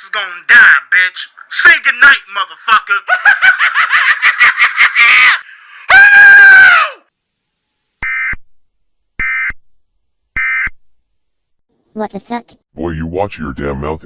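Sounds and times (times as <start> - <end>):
cartoon voice laughing: 3.1 - 5.4
loud scream: 4.9 - 7.1.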